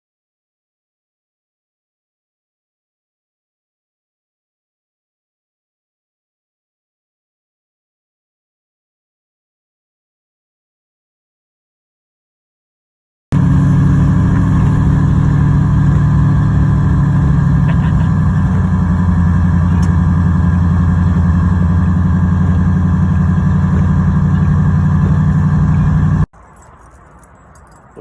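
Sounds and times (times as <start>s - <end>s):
car engine running: 13.4s - 28.0s
road and wind noise: 13.4s - 28.0s.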